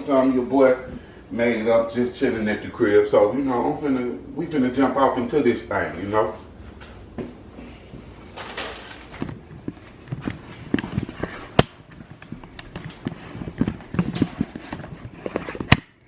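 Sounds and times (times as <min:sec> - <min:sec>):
kitchen items knocking and clicking: 0:08.3 - 0:09.8.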